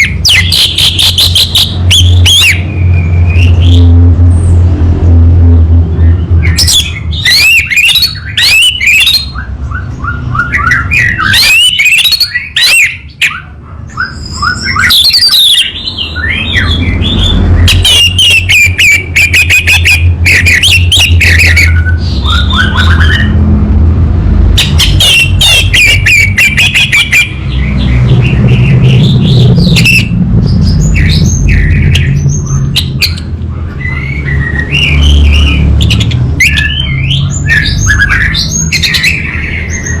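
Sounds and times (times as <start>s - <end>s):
steady low hum: 16.1s - 38.3s.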